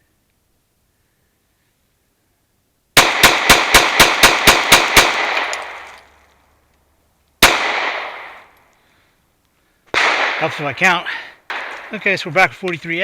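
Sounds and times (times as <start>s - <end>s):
ringing echo of gunshots: 3.0s - 5.9s, 7.4s - 8.5s, 9.9s - 10.7s, 11.5s - 12.0s
pistol shots: 3.0s - 6.0s, 7.4s - 8.5s, 9.9s - 10.8s, 11.5s - 12.0s.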